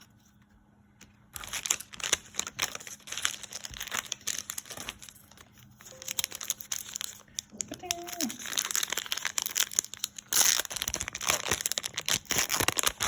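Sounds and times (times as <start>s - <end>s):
foil wrapper crinkling: 1.0s - 13.0s.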